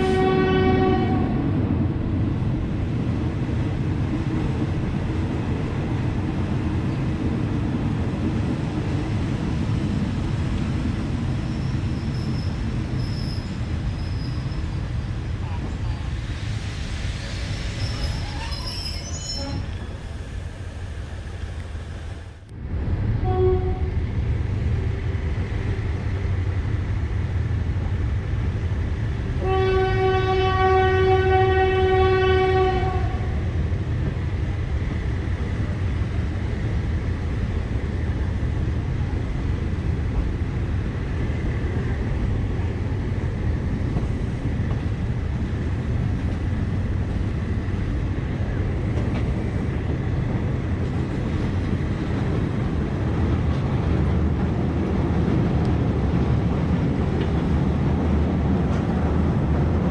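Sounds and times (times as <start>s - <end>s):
train horn: 0.0s - 1.4s, 19.3s - 19.7s, 23.2s - 24.0s, 29.4s - 33.4s
diesel train rumbling: 0.0s - 59.9s.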